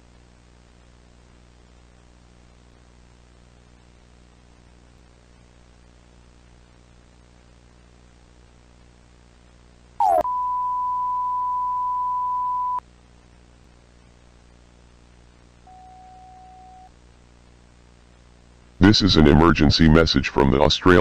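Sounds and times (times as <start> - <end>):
faint steady hum and hiss: 0.0 - 21.0
steady high beep: 10.0 - 12.8.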